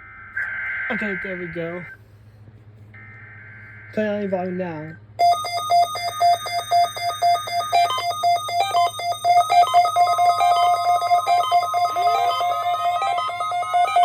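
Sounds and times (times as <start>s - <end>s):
steady warning alarm tone: 3.0s - 14.0s
rapid electronic beeping: 5.2s - 14.0s.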